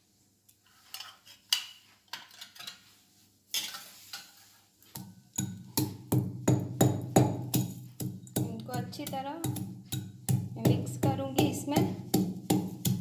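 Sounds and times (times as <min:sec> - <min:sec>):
pestle clinking and scraping: 0:03.5 - 0:13.0
pestle pounding in mortar: 0:05.0 - 0:13.0.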